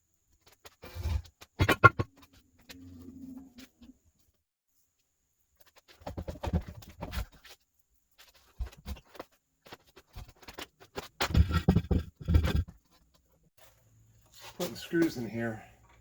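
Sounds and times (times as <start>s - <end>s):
hardware clattering and knocking: 1.5s - 2.3s, 11.1s - 12.9s.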